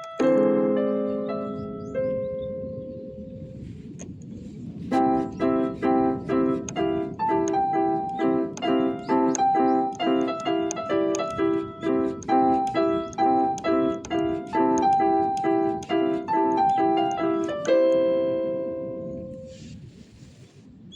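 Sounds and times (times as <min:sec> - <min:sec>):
synthesizer keyboard playing chords: 0:00.0 - 0:03.6, 0:04.8 - 0:19.5.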